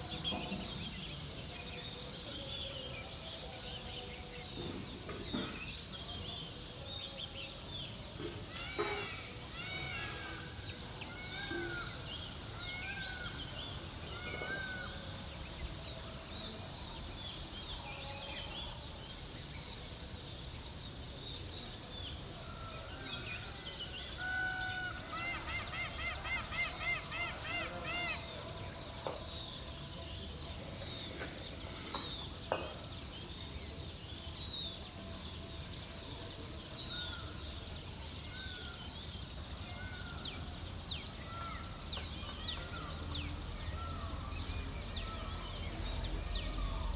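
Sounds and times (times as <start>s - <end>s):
background hiss: 0.0s - 46.9s
wild birds chirping: 17.8s - 46.9s.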